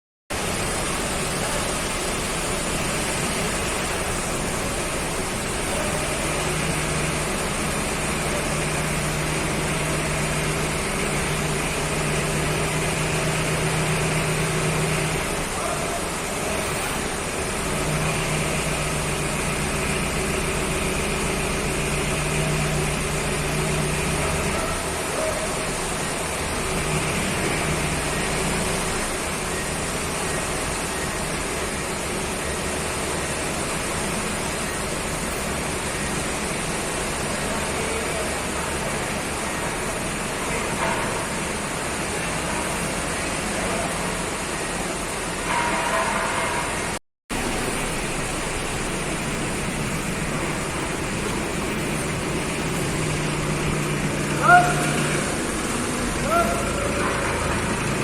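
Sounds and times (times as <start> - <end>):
forklift engine running: 0.3 - 25.0, 47.3 - 58.0.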